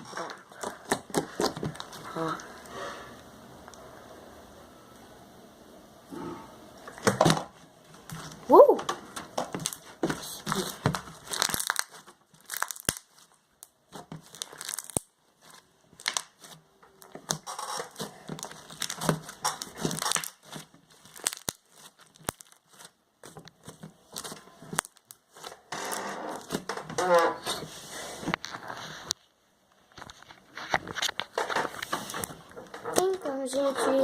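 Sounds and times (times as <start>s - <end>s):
slime crackling and popping: 0.1s - 2.5s, 8.0s - 27.6s.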